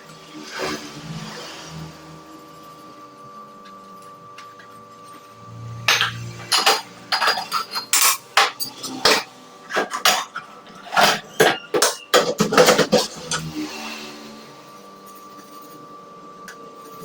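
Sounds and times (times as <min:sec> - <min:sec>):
dishes and cutlery clinking: 0:05.9 - 0:13.5.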